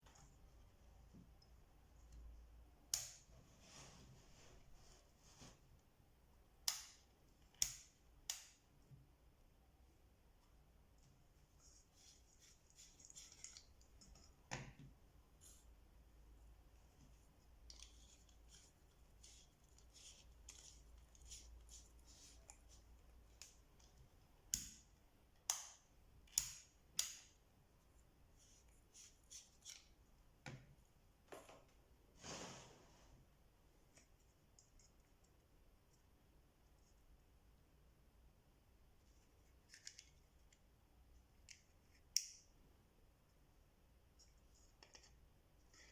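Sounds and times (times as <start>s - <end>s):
hands handling small parts: 16.9s - 24.7s, 39.2s - 40.7s
knocks and scrape: 32.2s - 33.2s.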